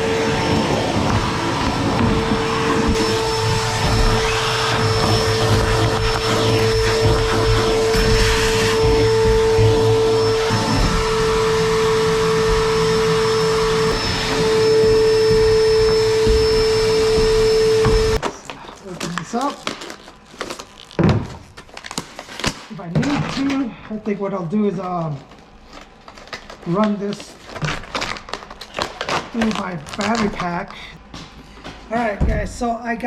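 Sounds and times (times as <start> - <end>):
vacuum cleaner running: 0.0 - 18.2.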